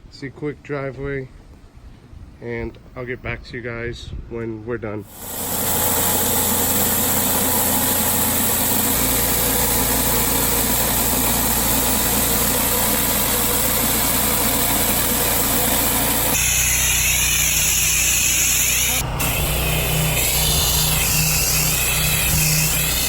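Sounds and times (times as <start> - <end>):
pressure washer engine drone: 5.1 - 23.0
water jet hissing on concrete: 5.1 - 23.0.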